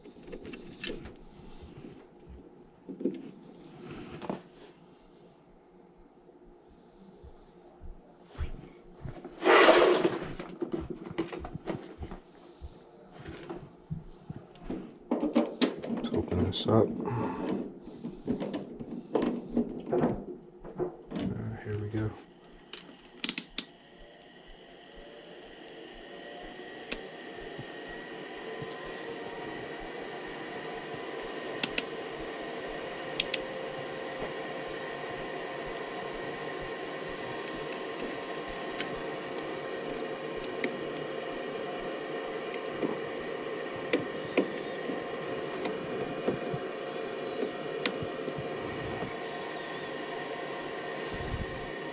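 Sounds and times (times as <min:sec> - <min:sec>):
faint steady hum: 0:00.0 - 0:51.9
loud rushing scrape: 0:09.4 - 0:10.2
clicks and knocks of tools: 0:22.7 - 0:23.7, 0:33.1 - 0:33.5.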